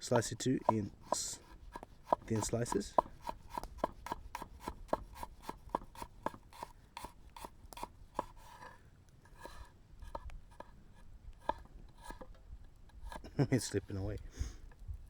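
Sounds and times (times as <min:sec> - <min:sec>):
knife chopping on cutting board: 0:00.3 - 0:08.6, 0:11.4 - 0:12.2.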